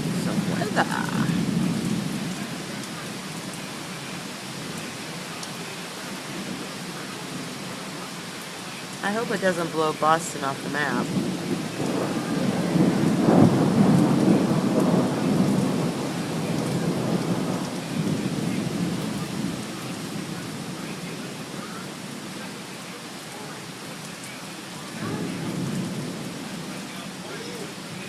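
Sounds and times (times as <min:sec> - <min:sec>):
thunder rumbling: 0:00.0 - 0:03.6, 0:09.3 - 0:21.6, 0:25.0 - 0:28.0
steady rain hiss: 0:00.0 - 0:28.0.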